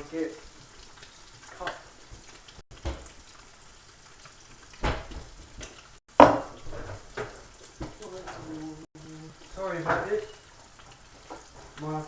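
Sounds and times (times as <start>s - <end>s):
food sizzling in a pan: 0.0s - 12.0s
kitchenware clattering: 4.8s - 8.7s, 9.6s - 11.9s.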